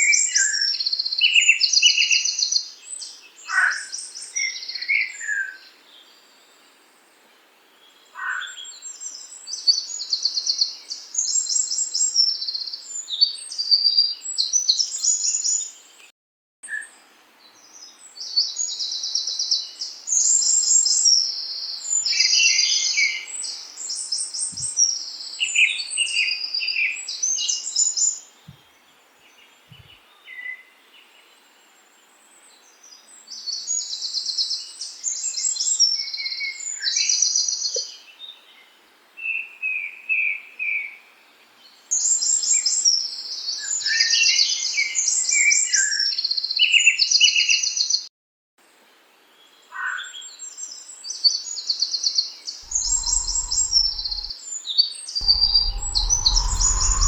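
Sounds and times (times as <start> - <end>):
songbirds chirping trills: 52.7 - 54.3.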